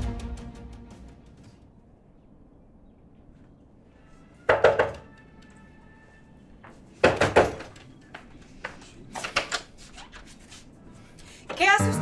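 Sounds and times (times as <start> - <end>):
knocking on a door: 4.5 - 5.0
faint background music: 11.6 - 12.0.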